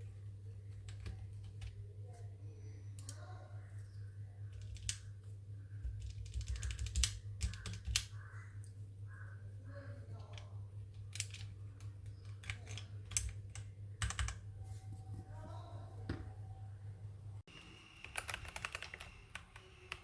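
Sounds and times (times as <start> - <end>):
low hum: 0.0 - 17.9
mechanical keyboard typing: 0.6 - 1.8, 4.5 - 5.0, 5.9 - 8.1, 10.3 - 14.4, 18.0 - 20.0.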